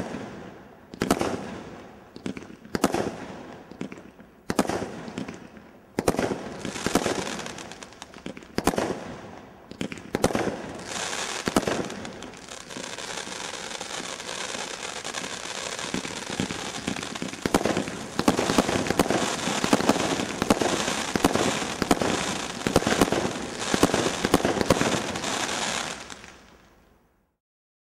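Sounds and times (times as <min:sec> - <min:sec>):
firework crackling: 0:06.0 - 0:26.7.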